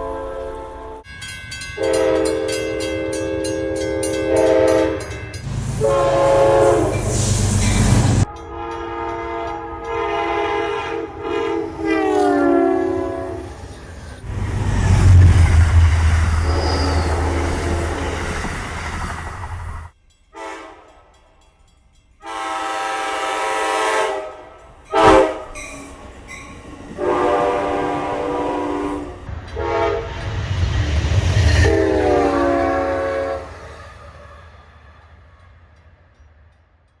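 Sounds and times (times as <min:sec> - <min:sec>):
train rumbling past: 0:00.0 - 0:37.0
multi-chime air horn blasts: 0:01.8 - 0:07.2, 0:08.2 - 0:13.4, 0:22.2 - 0:25.8.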